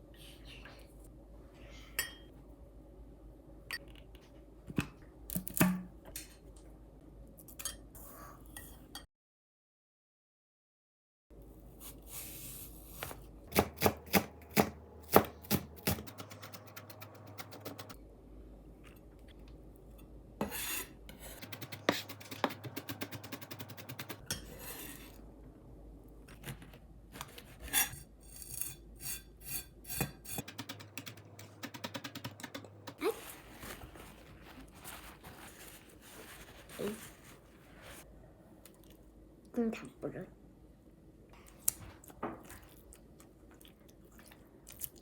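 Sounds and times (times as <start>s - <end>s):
utensils knocking and clicking: 13.5s - 18.0s, 21.4s - 24.3s, 30.0s - 33.0s
rasping and scraping: 27.2s - 31.6s.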